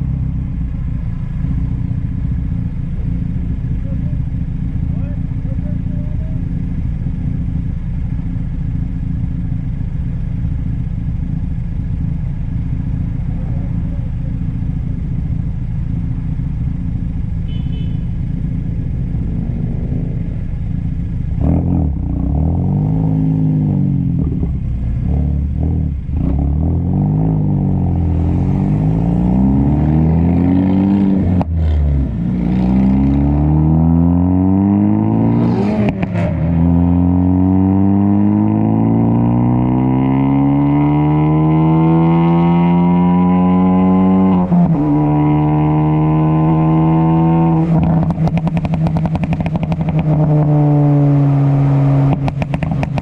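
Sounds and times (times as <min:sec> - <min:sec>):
car engine revving: 0:00.0 - 0:53.0
exhaust pops: 0:47.7 - 0:50.5, 0:52.0 - 0:53.0.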